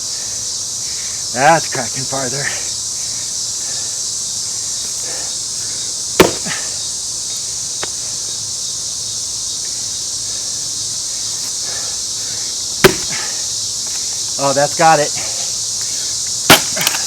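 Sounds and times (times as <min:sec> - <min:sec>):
high insect chirring: 0:00.0 - 0:17.0
axe striking wood: 0:06.2 - 0:06.7, 0:12.8 - 0:13.4, 0:16.5 - 0:17.0.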